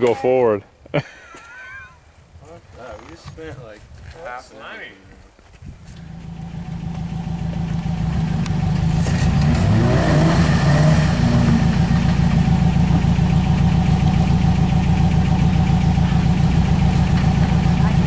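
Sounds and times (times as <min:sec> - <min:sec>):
off-road vehicle engine running: 0:05.8 - 0:18.0.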